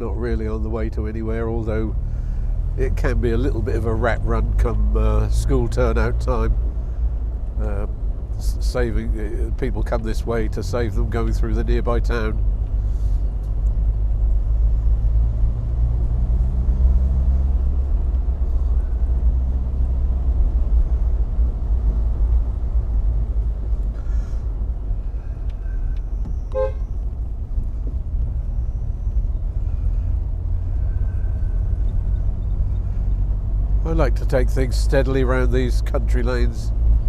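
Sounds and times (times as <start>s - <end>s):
car engine and road noise: 0.0s - 37.0s
brief pitched toot: 26.3s - 27.0s.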